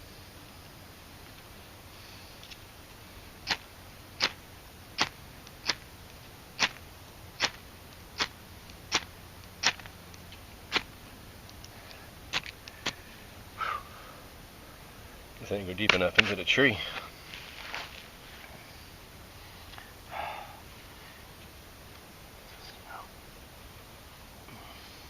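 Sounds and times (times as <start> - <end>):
fire-starter striker rasping: 8.2 - 13.0.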